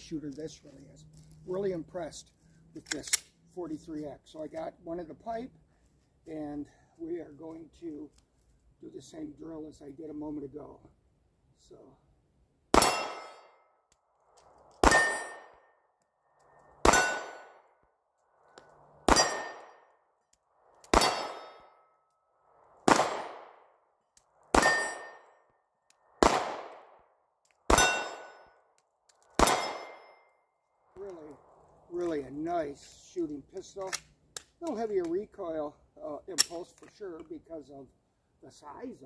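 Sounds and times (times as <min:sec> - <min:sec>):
pistol shots with ringing tail: 0:12.7 - 0:13.6, 0:14.8 - 0:15.6, 0:16.8 - 0:17.7, 0:19.0 - 0:19.9, 0:20.9 - 0:21.8, 0:22.8 - 0:23.7, 0:24.5 - 0:25.4, 0:26.2 - 0:27.0, 0:27.7 - 0:28.6, 0:29.4 - 0:30.3.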